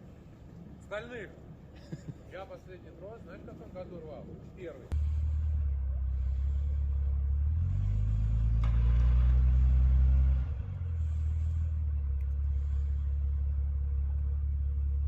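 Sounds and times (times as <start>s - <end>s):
engine idling and revving: 4.9s - 15.0s.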